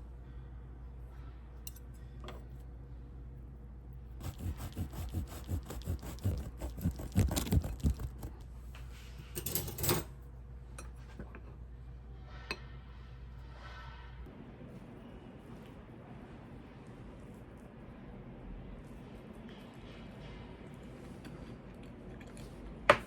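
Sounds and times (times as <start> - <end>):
utensils and dishes clinking: 9.2 - 10.2.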